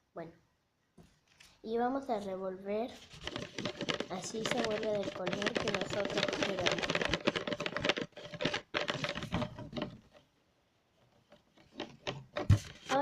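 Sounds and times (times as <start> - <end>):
pencil tapping against pot: 3.3 - 9.9.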